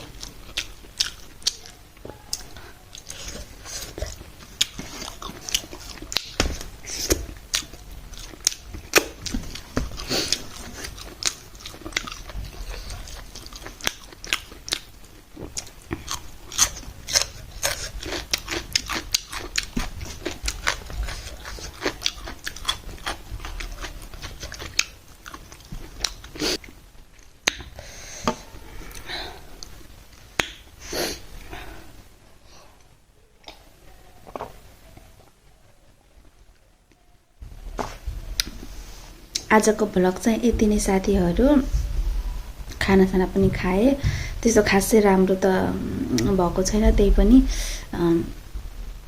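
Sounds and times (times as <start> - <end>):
person chewing and biting food: 0.0 - 27.8
wet mouth clicks and smacks: 27.4 - 27.7.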